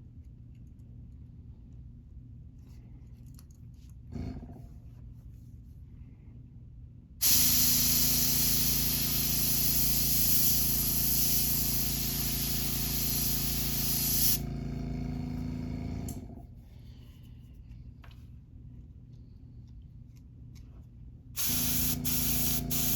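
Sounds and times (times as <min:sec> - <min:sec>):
airbrush spraying hiss: 0:07.2 - 0:14.4, 0:21.4 - 0:22.9
motor hum: 0:07.2 - 0:16.5, 0:21.4 - 0:22.9.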